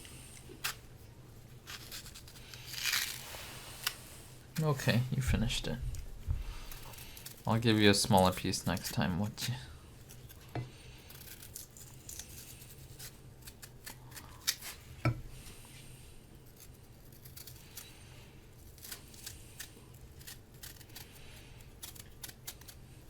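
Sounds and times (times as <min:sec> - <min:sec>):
knife cutting crisp fruit: 0:06.4 - 0:14.9, 0:18.6 - 0:22.9.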